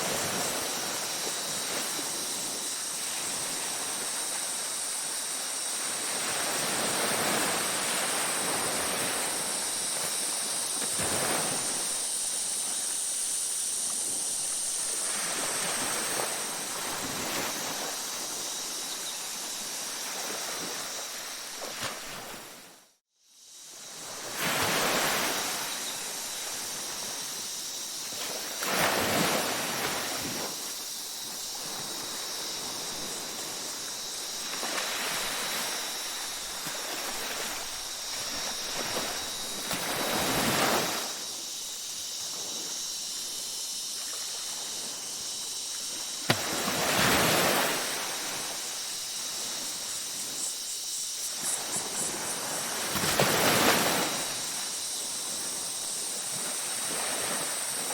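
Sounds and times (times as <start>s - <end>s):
ocean waves breaking: 31.5s - 41.2s, 45.9s - 50.4s, 51.4s - 57.9s.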